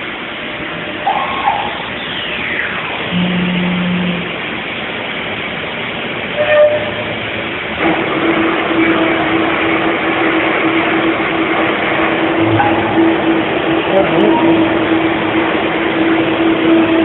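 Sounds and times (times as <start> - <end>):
steady hum: 0.0 - 17.0
milling machine whirring: 7.0 - 17.0.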